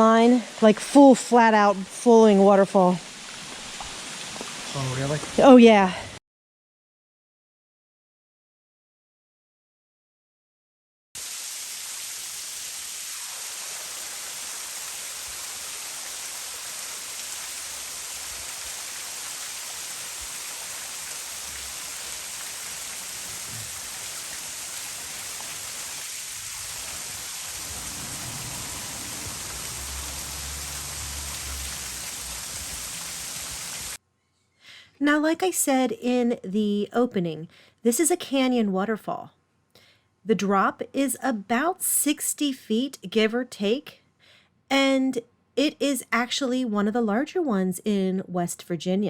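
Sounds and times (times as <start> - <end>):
waterfall rushing: 11.2 - 34.0
low rumbling: 26.6 - 33.2.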